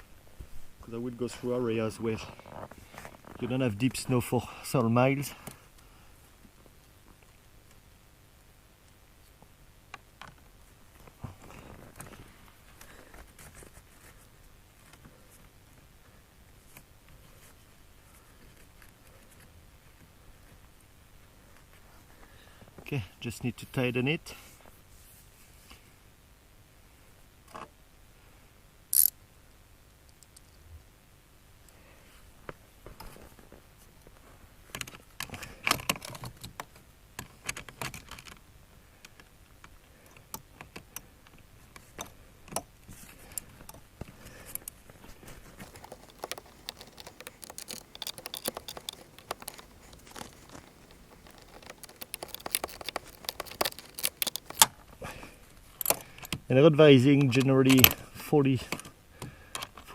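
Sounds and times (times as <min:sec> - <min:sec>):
hand tools clicking on metal: 0:45.6 - 0:54.7.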